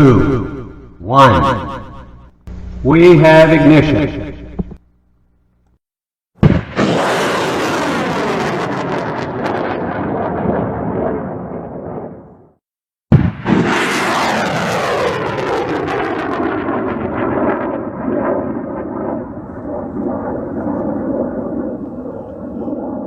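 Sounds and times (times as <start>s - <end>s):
rocket engine roar with whine: 0.5s - 4.8s, 13.6s - 23.0s
rocket ignition blast: 6.4s - 10.6s, 13.1s - 16.1s.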